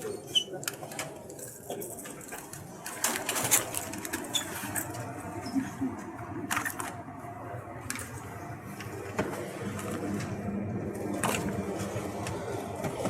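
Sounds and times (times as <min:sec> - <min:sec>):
packaged goods clicking and rattling: 0:00.0 - 0:05.7
refrigerated display case humming: 0:00.0 - 0:13.0.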